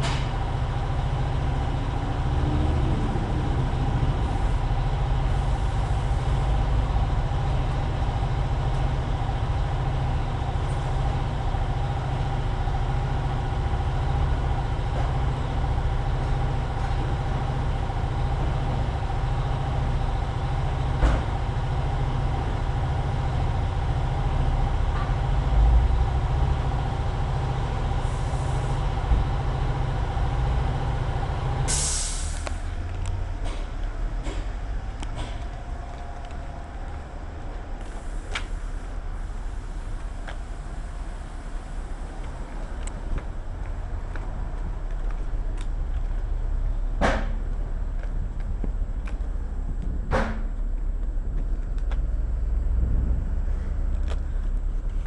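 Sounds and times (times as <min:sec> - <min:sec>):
low machinery drone: 0:00.0 - 0:55.0.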